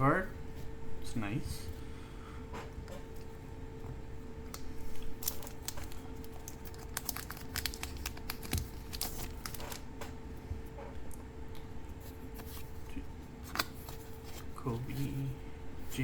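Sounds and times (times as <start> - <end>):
card wrappers crinkling: 4.5 - 9.9.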